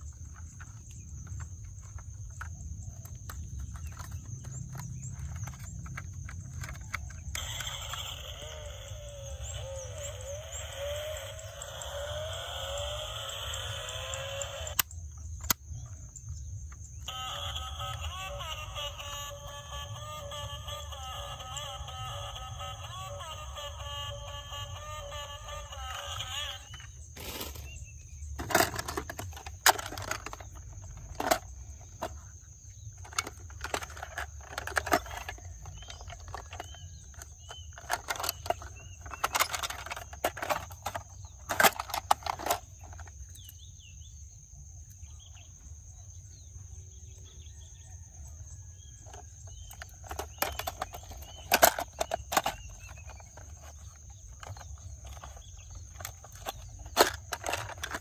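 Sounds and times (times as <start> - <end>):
toy cars clicking and clattering: 0.0 - 27.7, 28.3 - 43.6, 48.9 - 58.0
faint bird chirps: 0.0 - 28.4, 31.8 - 58.0
steady background hum: 0.0 - 58.0.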